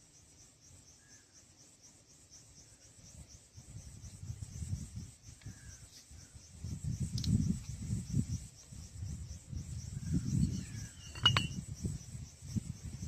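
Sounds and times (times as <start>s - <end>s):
crickets chirring: 0.0s - 13.0s
faint bird chirps: 0.9s - 1.4s, 5.4s - 6.4s, 9.9s - 11.6s.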